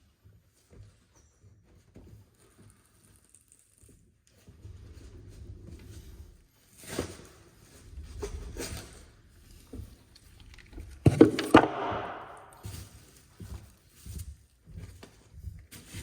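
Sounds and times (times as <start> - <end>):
sharp knocks: 11.1 - 12.6.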